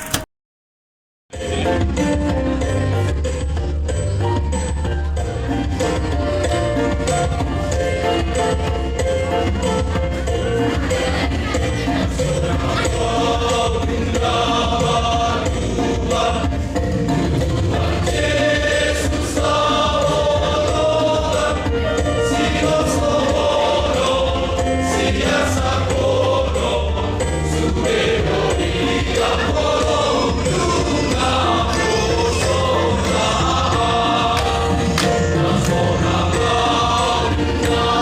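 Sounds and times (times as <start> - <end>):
choir singing: 10.3 - 38.0.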